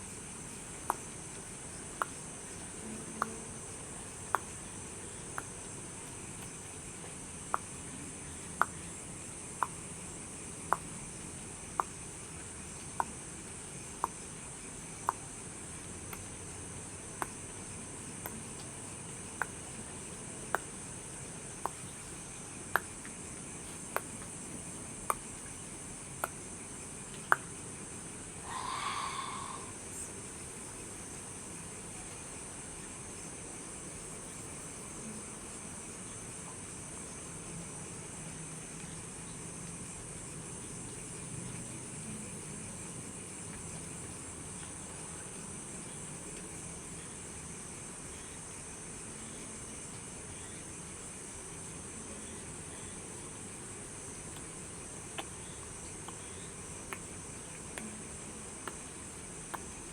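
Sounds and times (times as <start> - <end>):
crickets trilling: 0.0 - 59.9
sharp ticks: 3.2 - 3.4, 9.6 - 9.9, 10.6 - 11.0, 11.7 - 13.2, 14.0 - 14.2, 15.0 - 20.9, 21.6 - 23.2, 23.8 - 27.6.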